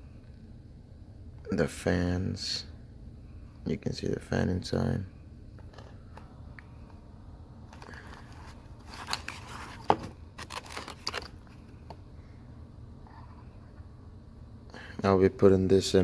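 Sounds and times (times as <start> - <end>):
handling noise: 7.7 - 12.0
packaging crinkling and clicking: 7.8 - 11.6.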